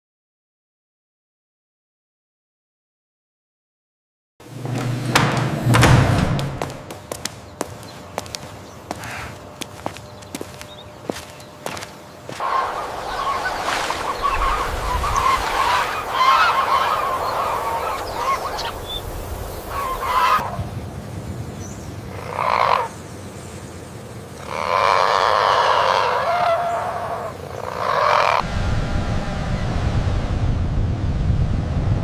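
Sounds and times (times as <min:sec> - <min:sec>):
cranes honking: 0:04.4 - 0:20.6, 0:24.4 - 0:28.4.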